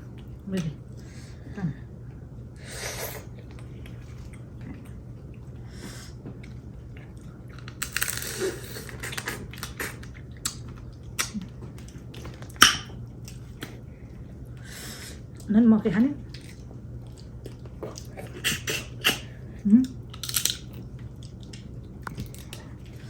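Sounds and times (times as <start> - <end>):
steady low hum: 0.0 - 23.0
chewing and crunching shells: 3.3 - 14.6, 16.2 - 23.0.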